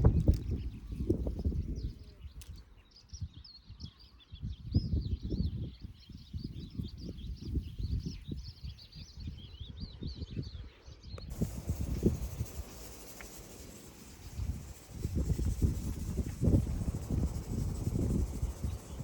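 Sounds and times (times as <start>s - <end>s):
small birds singing: 0.0s - 19.0s
low rumbling: 11.3s - 19.0s.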